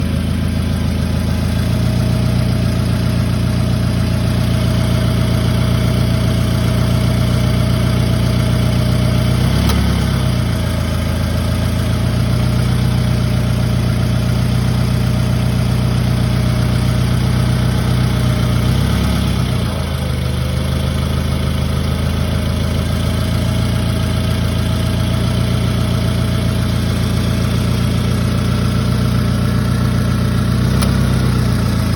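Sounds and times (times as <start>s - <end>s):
car engine idling: 0.0s - 31.9s.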